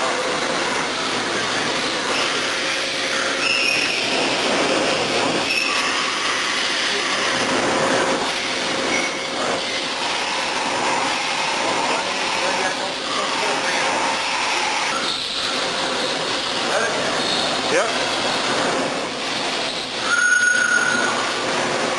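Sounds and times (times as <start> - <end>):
milling machine cutting metal: 0.0 - 21.9
high-pitched cutting squeals: 2.1 - 4.2, 5.4 - 7.4, 20.0 - 21.3.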